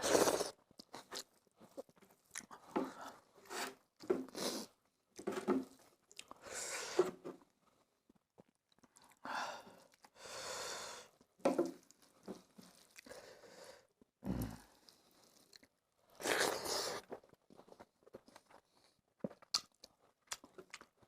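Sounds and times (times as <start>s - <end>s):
chewing and crunching: 0.0s - 3.2s, 8.1s - 9.2s, 11.8s - 13.2s, 14.8s - 21.0s.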